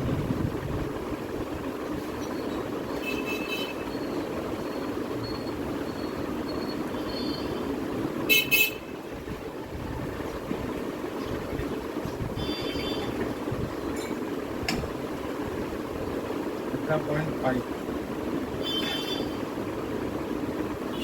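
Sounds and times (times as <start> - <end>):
street traffic: 0.0 - 21.0
vehicle horns honking: 3.0 - 3.9, 8.3 - 9.0, 12.3 - 13.2, 18.6 - 19.4.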